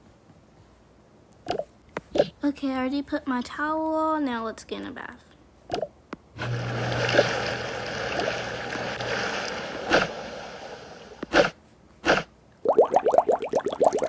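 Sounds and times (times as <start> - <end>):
bubbly blips: 5.7 - 11.5, 12.6 - 14.0
water splashes: 5.7 - 11.5
running water rushing: 6.4 - 11.4.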